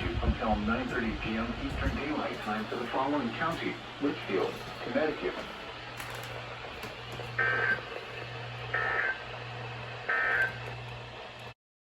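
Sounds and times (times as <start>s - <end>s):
low electrical hum: 0.0s - 11.6s
harsh data-tone bursts: 7.4s - 9.2s, 10.0s - 10.8s.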